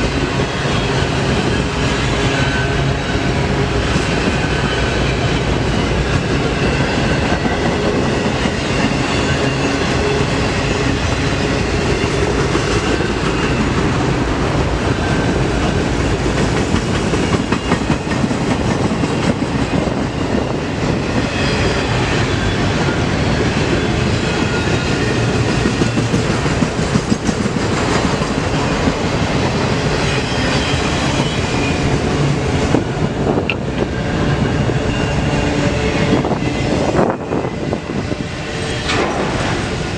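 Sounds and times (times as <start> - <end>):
freight train rumble: 0.0 - 39.9
train wheels clacking over rail joints: 3.6 - 20.1, 21.1 - 32.4, 38.5 - 39.8.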